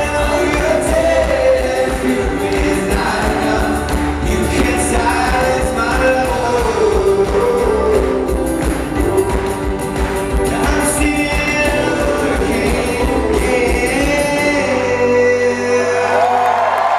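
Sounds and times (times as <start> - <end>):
drum beat: 0.0 - 14.5
live rock band with vocals: 0.0 - 16.9.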